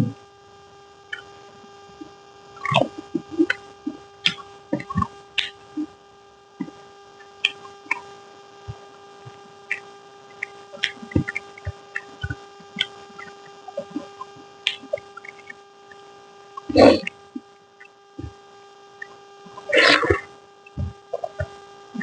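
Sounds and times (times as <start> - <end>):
faint steady hum: 0.0 - 22.0
soft low thumps: 20.8 - 21.0.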